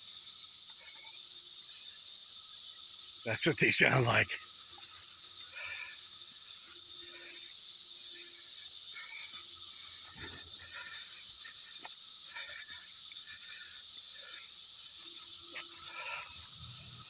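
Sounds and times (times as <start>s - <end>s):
cicadas droning: 0.0s - 17.0s
faint short calls: 3.3s - 4.5s.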